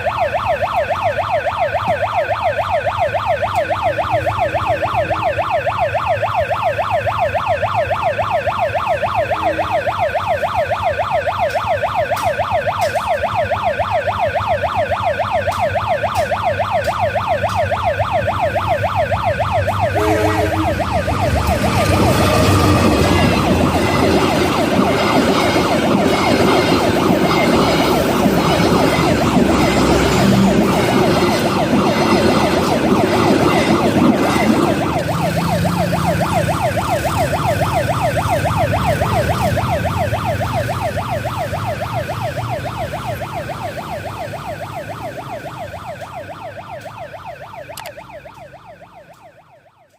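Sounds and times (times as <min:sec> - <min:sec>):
level crossing siren warbling: 0:00.0 - 0:49.9
passing train rumble: 0:18.2 - 0:45.8.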